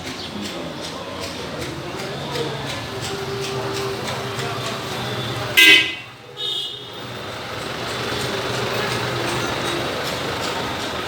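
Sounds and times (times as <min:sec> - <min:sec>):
street traffic: 0:00.0 - 0:11.0
vehicle engine running: 0:00.0 - 0:11.0
car horn toots: 0:05.2 - 0:07.1.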